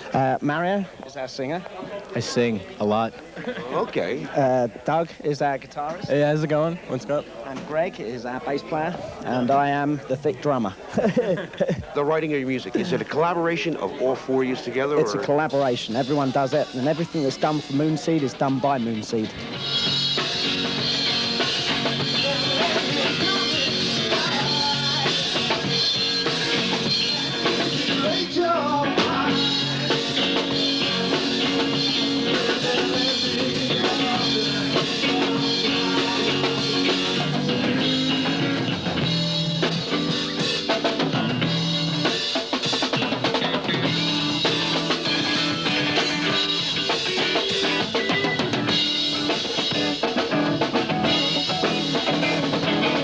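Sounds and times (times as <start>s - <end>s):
rock band music: 12.4s - 53.0s
drum kit playing: 15.0s - 53.0s.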